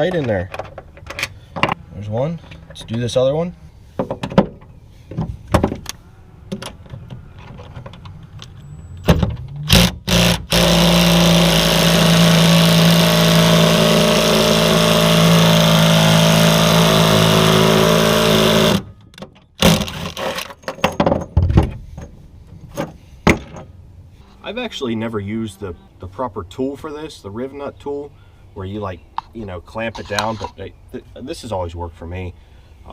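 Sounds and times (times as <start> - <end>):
power drill running: 9.7 - 18.8.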